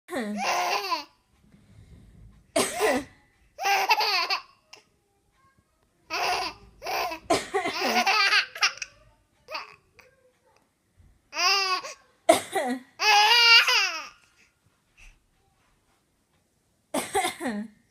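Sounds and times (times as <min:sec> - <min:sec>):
child fake coughing: 0:02.6 - 0:03.1, 0:11.8 - 0:13.8.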